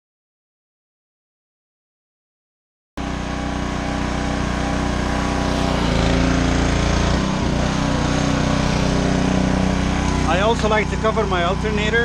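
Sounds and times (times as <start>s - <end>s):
pressure washer motor drone: 3.0s - 12.0s
hissing water jet: 3.1s - 11.1s.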